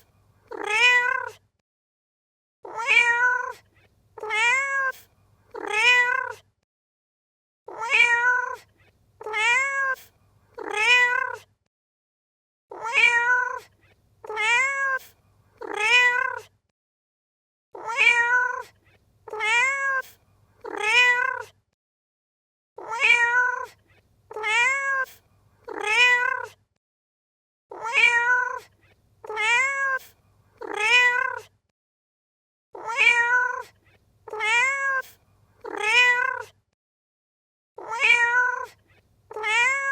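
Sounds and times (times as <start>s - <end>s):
cat meowing: 0.5s - 1.4s, 2.6s - 3.6s, 4.2s - 6.4s, 7.7s - 11.5s, 12.7s - 16.5s, 17.8s - 21.5s, 22.8s - 26.6s, 27.7s - 31.5s, 32.8s - 36.6s, 37.8s - 39.9s.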